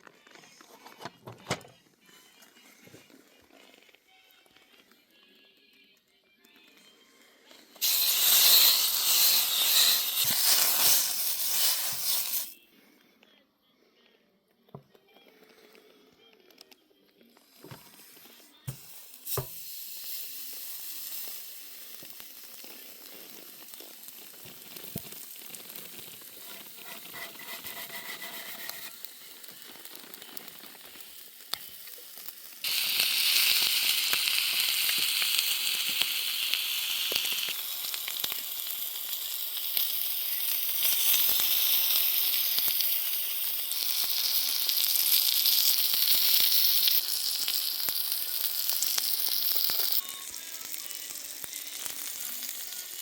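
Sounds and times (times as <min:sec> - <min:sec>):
steak sizzling on hot stone: 0:07.8 - 0:12.6, 0:18.7 - 0:53.0.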